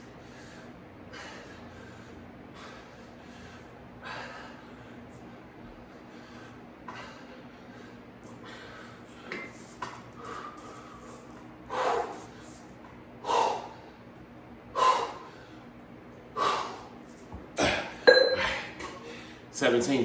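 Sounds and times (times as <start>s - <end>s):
man exhaling forcefully: 17.6s - 19.3s.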